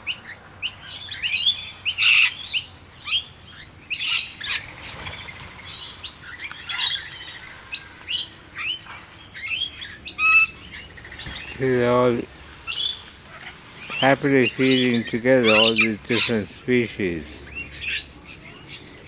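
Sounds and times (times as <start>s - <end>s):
birds chirping and squawking: 0.1s - 19.0s.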